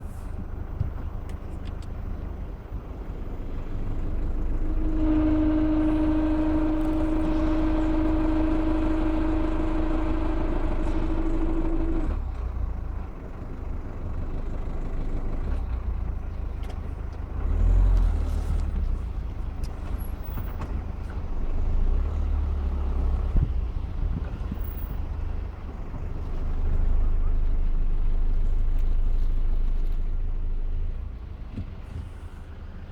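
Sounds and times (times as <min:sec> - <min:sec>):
engine and road rumble: 0:00.0 - 0:32.9
clutch steady tone: 0:00.7 - 0:13.1.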